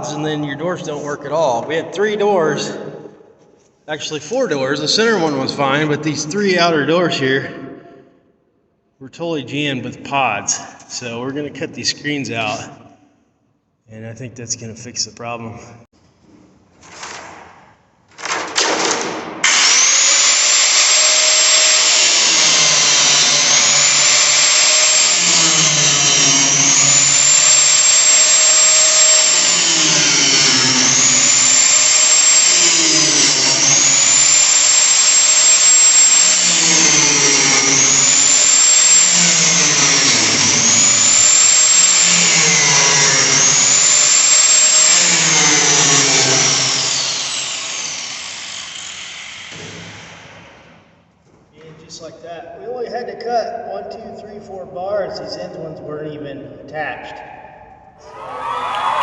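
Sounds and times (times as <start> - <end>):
power tool cutting metal bars: 18.2 - 50.8.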